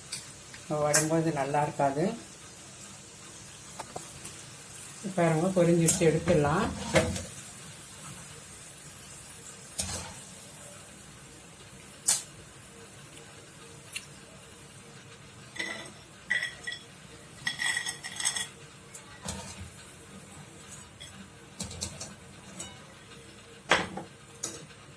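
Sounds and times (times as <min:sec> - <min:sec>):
oil sizzling: 0:00.0 - 0:24.9
metal spoon clinking and scraping: 0:15.6 - 0:19.6.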